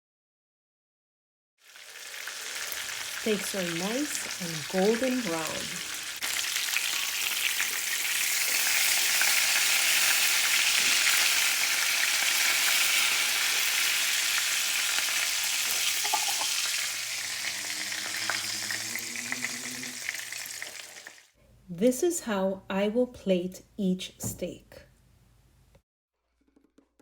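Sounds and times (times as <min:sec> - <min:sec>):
steaks frying in oil: 0:01.6 - 0:21.3.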